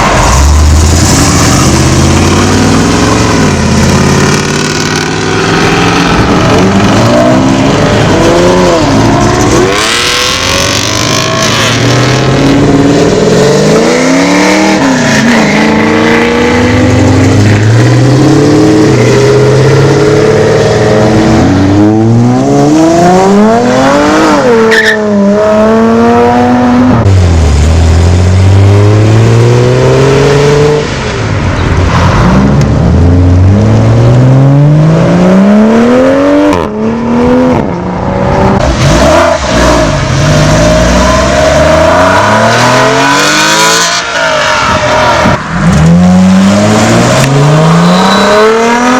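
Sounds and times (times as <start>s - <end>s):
car engine revving hard: 0.0s - 30.9s, 32.0s - 48.9s
tyre squeal: 47.6s - 48.9s.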